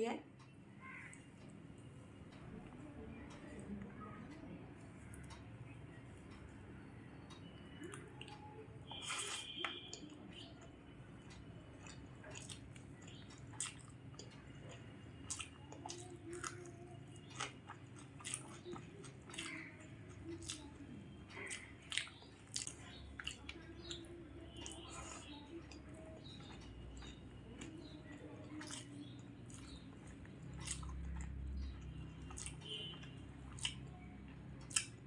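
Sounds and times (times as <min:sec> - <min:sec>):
person chewing food: 0:07.3 - 0:35.0
mouth smacks and soft crunches: 0:07.8 - 0:10.6, 0:11.7 - 0:34.0, 0:34.6 - 0:35.0.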